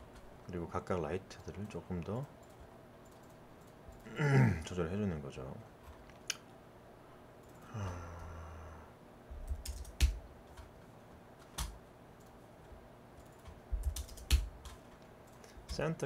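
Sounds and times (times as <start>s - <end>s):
keyboard and mouse clicks: 1.4s - 4.1s, 9.4s - 10.7s, 13.2s - 15.8s
man murmuring: 4.1s - 4.8s.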